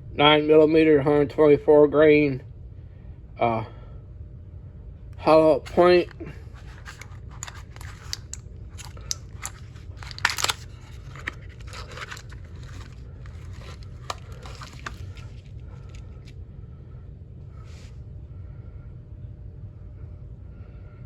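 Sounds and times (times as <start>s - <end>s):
ammunition box handled and opened: 5.7s - 16.0s.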